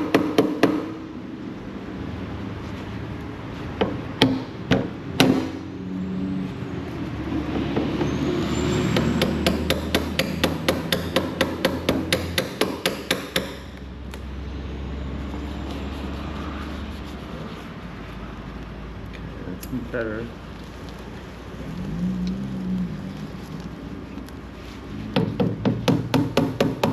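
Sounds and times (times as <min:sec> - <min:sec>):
hammer striking metal: 0:09.0 - 0:13.8.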